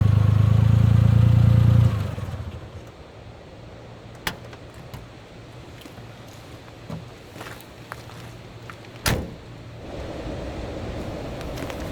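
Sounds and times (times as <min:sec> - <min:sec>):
car engine idling: 0:00.0 - 0:06.0.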